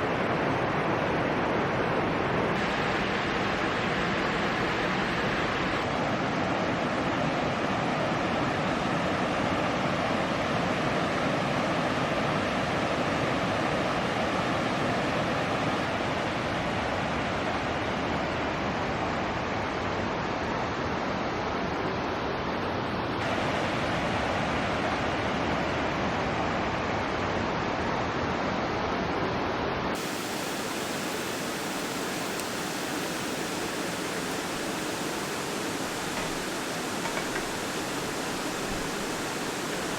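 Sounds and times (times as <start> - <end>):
stream rushing over rocks: 30.0 - 39.9.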